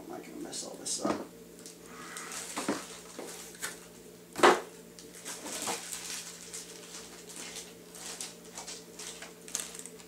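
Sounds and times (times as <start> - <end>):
plastic bags crinkling: 2.2 - 3.6, 5.0 - 10.0.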